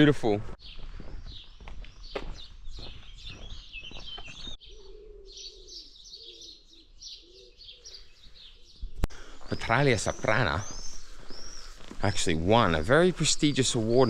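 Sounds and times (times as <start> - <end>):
small birds chirping: 0.1 - 14.0
dove cooing: 4.6 - 8.8.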